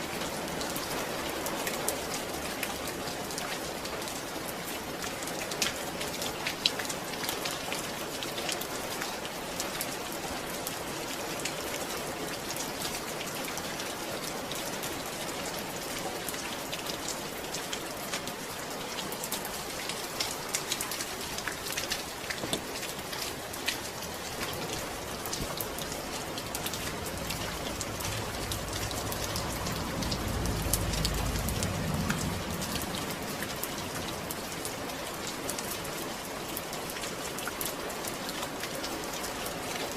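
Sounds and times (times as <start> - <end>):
steady rain: 0.0 - 39.9
raindrops clicking: 19.3 - 35.8
low rumble: 25.2 - 34.4.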